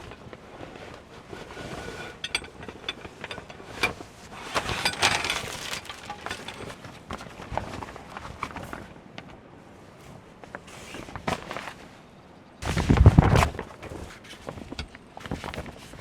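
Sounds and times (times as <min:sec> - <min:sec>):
objects clinking and knocking: 0:01.6 - 0:07.0.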